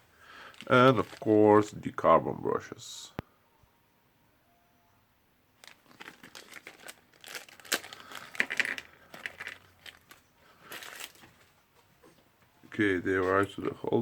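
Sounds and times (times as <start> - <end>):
packaging crinkling and rustling: 0.4 - 1.6, 5.6 - 11.6.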